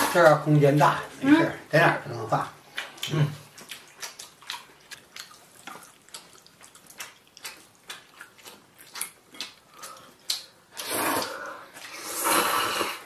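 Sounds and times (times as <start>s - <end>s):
hiss: 10.8s - 13.0s.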